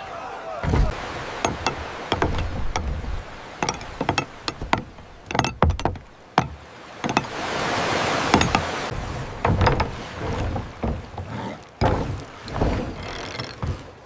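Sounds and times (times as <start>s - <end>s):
hammer knocking: 0.6s - 7.4s, 8.3s - 8.8s, 9.4s - 13.0s.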